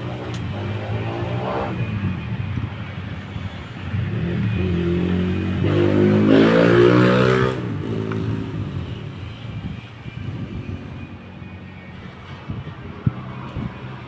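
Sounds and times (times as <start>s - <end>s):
vehicle engine revving: 4.0s - 8.8s.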